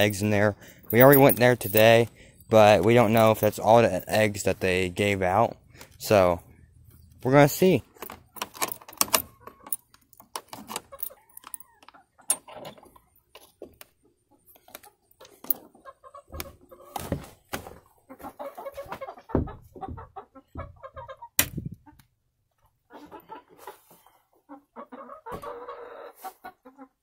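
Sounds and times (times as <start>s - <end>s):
chickens clucking: 14.0s - 27.0s.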